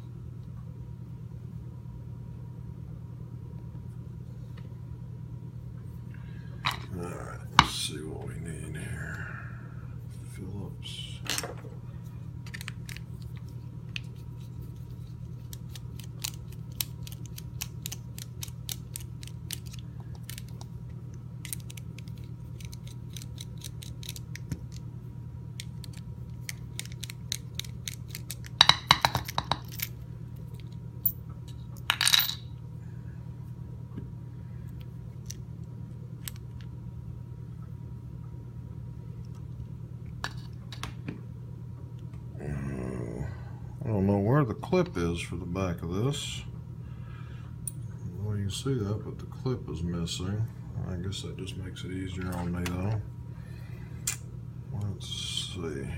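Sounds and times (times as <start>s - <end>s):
low hum: 0.0s - 55.9s.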